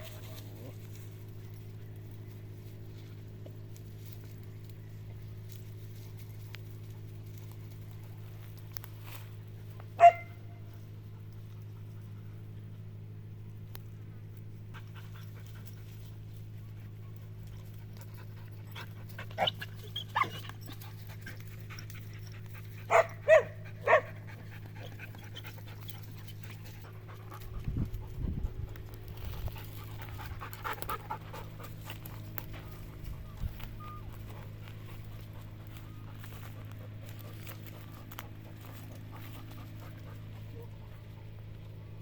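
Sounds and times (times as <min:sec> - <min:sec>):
steady low hum: 0:00.0 - 0:42.0
dogs barking: 0:10.0 - 0:10.6, 0:18.4 - 0:27.7
dogs panting: 0:10.8 - 0:13.0, 0:14.5 - 0:42.0.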